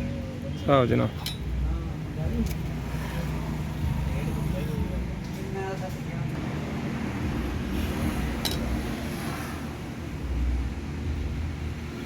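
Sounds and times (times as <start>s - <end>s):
steady low rumble: 1.5s - 12.0s
light metallic clink: 8.4s - 8.8s.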